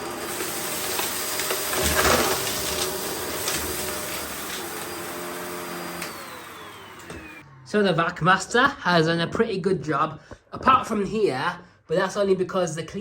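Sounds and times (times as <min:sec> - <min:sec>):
vacuum cleaner motor whine: 0:00.0 - 0:07.6
vacuum motor winding down: 0:00.0 - 0:07.7.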